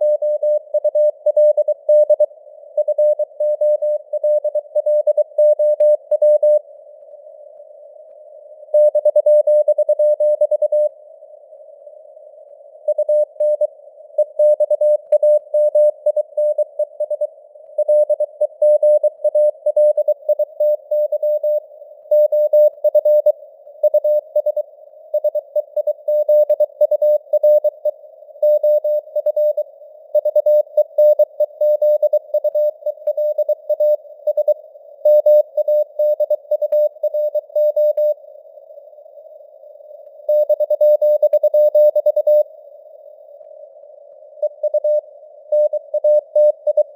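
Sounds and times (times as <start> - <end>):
morse code beeps: 12.9 - 24.6, 25.2 - 29.6, 30.2 - 38.2, 40.3 - 42.4.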